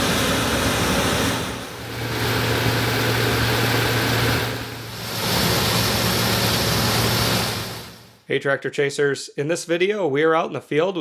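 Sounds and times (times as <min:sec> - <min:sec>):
diesel engine droning: 0:00.0 - 0:08.2.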